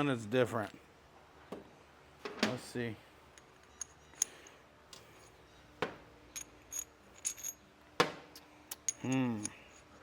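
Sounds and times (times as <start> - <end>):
metal parts clinking and tapping: 3.4 - 5.4, 6.3 - 7.7, 8.3 - 10.0.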